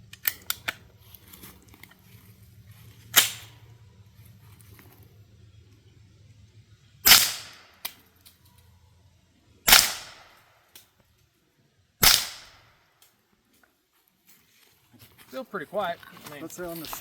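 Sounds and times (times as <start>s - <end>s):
suppressed gunshots: 3.1s - 3.6s, 7.0s - 8.0s, 9.7s - 10.4s, 12.0s - 12.7s.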